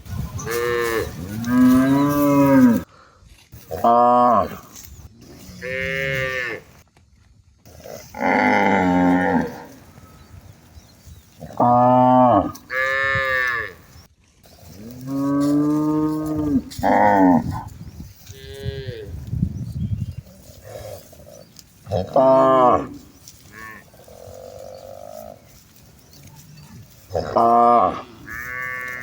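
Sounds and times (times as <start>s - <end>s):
cattle mooing: 0.4s - 2.9s, 5.3s - 6.7s, 7.8s - 10.0s, 14.9s - 17.7s, 21.9s - 25.4s, 27.1s - 29.0s.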